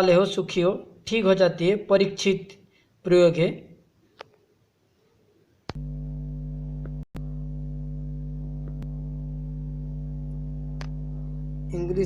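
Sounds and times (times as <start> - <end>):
click: 5.7 - 5.9, 6.8 - 7.0, 8.6 - 8.9, 10.8 - 11.0
electronic hum of low tones: 5.7 - 12.0.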